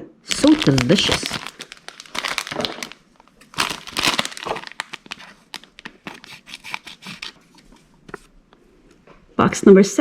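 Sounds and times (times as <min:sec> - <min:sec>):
plastic packaging crinkling: 0:00.2 - 0:07.8.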